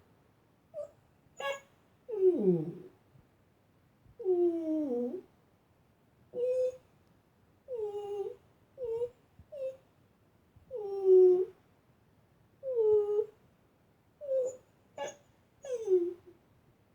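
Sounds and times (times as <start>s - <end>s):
dog whining: 0.8s - 1.6s, 6.4s - 6.8s, 14.2s - 16.3s.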